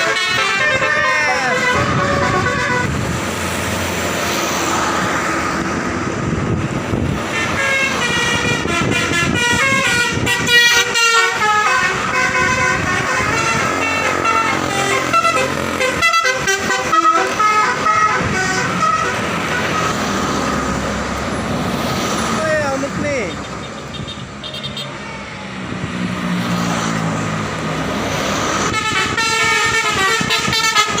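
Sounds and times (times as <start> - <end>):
musical bus air horn tune: 0.0 - 3.0, 7.3 - 20.0, 23.7 - 25.0, 28.6 - 31.0
bus engine and road noise: 0.0 - 31.0.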